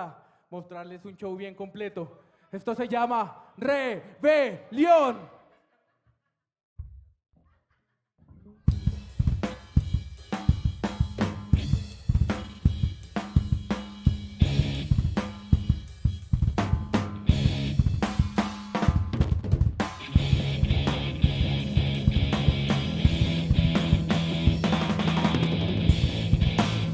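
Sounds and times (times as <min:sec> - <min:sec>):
drum kit played hard and fast: 0:08.7 - 0:26.9
steady low bass note: 0:20.2 - 0:24.8, 0:25.4 - 0:26.9.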